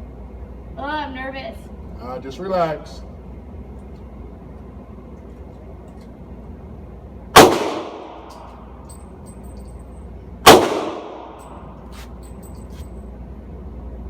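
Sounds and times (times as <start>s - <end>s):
rifle shots with echo: 7.4s - 8.3s, 10.4s - 11.4s.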